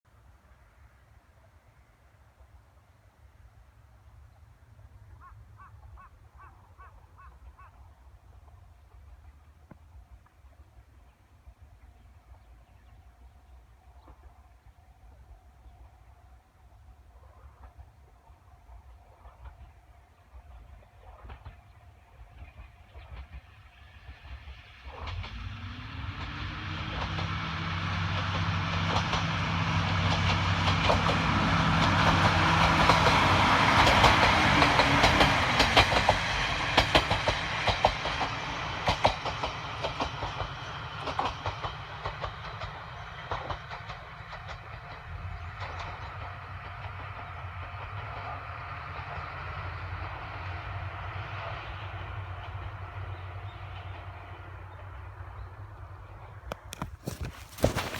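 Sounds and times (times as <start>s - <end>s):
diesel train engine drone: 7.0s - 56.8s
wheels clacking over rail joints: 25.0s - 49.3s, 56.4s - 57.9s.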